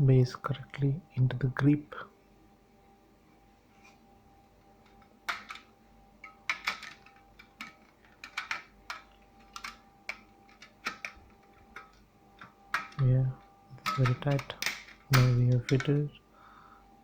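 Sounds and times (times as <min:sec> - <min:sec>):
faint steady hum: 0:00.0 - 0:17.0
plastic parts clicking and knocking: 0:04.8 - 0:13.0, 0:13.8 - 0:16.2.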